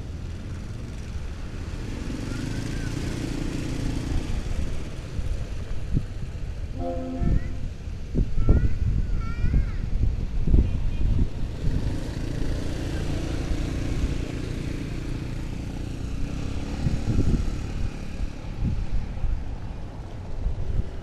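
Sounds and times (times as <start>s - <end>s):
train rumble: 3.9s - 11.9s.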